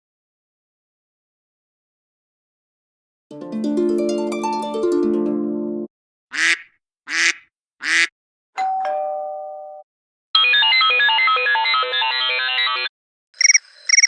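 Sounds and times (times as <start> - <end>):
chiming ringtone melody: 3.3 - 5.9
harp-like ringtone melody: 3.3 - 5.9.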